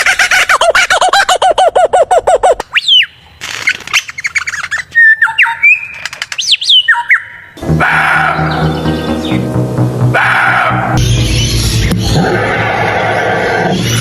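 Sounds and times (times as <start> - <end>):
bird squawks and whistles: 3.9 - 7.5
music: 7.6 - 14.0.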